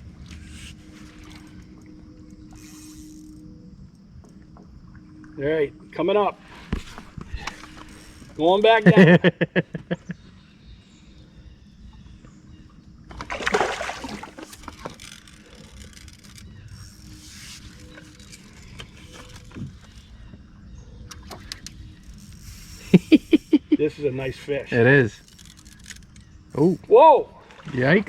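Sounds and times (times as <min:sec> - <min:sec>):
rushing water splash: 0:13.2 - 0:14.5
faint clicks: 0:21.0 - 0:23.4, 0:25.2 - 0:26.7.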